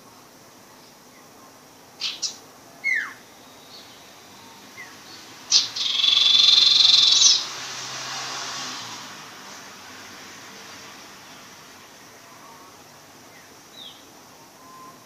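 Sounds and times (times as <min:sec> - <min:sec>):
songbird whistling and trilling: 0:02.0 - 0:03.9, 0:05.5 - 0:07.4, 0:14.6 - 0:15.0.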